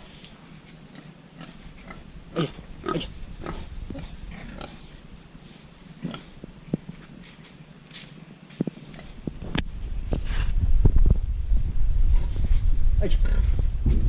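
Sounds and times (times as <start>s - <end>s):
pig grunting: 0.9s - 5.0s.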